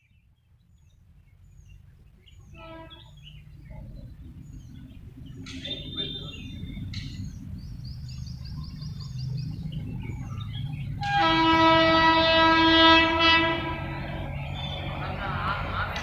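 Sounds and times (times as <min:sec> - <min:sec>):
birds chirping: 0:00.0 - 0:16.0
train rumble: 0:01.0 - 0:16.0
train horn blast: 0:02.5 - 0:03.1, 0:11.0 - 0:14.2.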